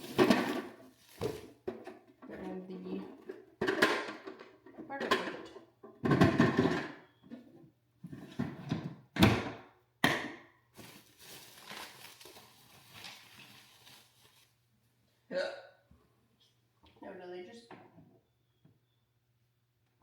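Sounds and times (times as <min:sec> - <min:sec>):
soft rustling: 0:10.8 - 0:14.6.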